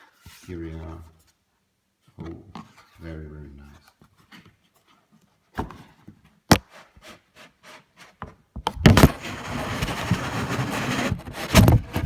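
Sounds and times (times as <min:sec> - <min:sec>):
box scraping and rubbing: 0:08.8 - 0:12.0.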